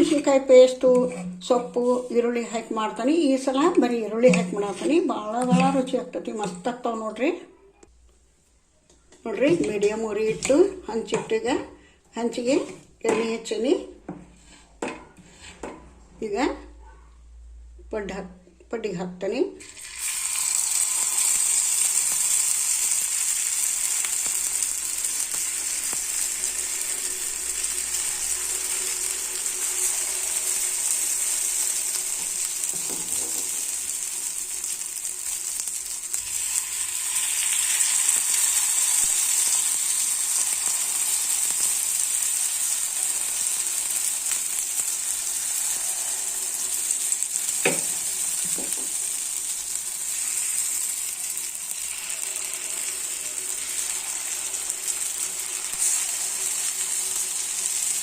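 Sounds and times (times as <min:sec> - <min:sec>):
batter sizzling in hot oil: 0:19.6 - 0:58.0.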